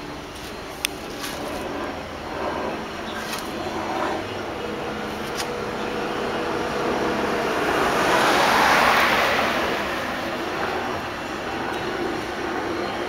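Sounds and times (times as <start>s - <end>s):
passing vehicle rushing: 3.5s - 12.5s.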